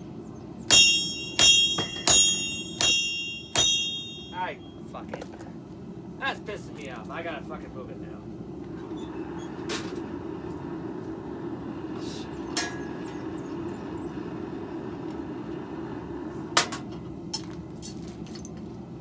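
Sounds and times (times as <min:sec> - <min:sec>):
metal clanks: 0:00.7 - 0:04.4, 0:12.6 - 0:13.2.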